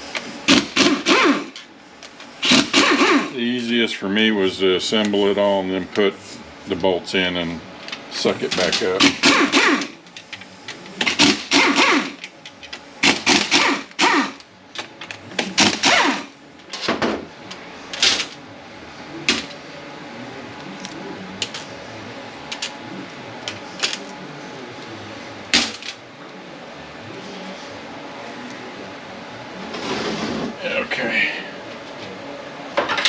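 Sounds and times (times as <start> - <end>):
loud tool bursts: 0.4 - 1.6, 2.4 - 3.4, 9.0 - 10.0, 11.1 - 12.2, 13.0 - 14.4, 15.6 - 16.3.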